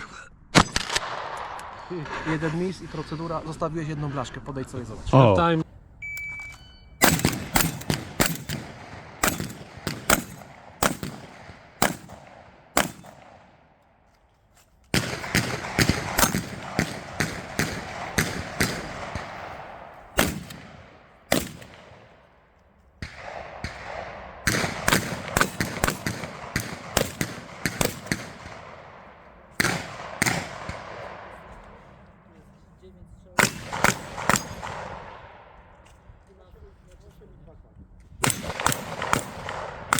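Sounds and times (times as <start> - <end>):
shotgun shots with echo: 7.0 - 13.8, 14.9 - 22.4, 23.0 - 32.3, 33.4 - 35.6, 38.2 - 39.9.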